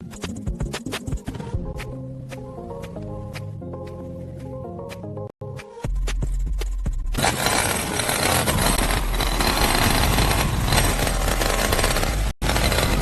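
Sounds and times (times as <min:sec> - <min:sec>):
small engine running: 0:07.2 - 0:13.0.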